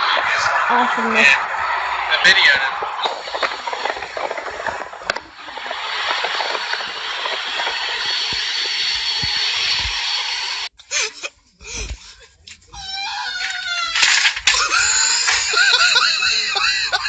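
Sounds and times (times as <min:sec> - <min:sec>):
steady rushing hiss: 0:01.3 - 0:10.7.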